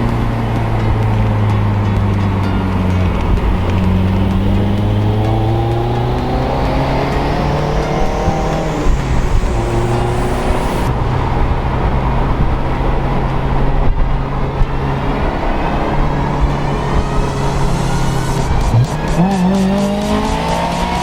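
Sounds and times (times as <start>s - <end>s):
car engine running: 0.0s - 21.0s.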